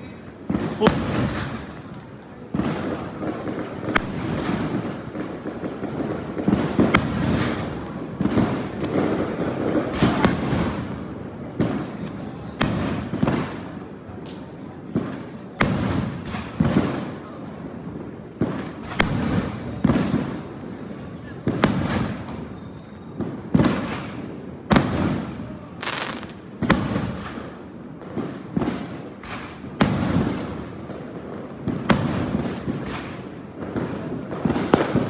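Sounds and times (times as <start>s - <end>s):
firework bangs: 0.0s - 35.0s
firework crackling: 0.0s - 35.0s.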